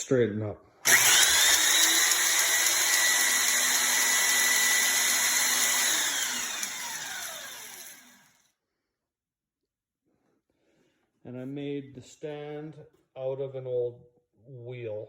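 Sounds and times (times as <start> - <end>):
belt grinder whining: 0.8 - 8.4.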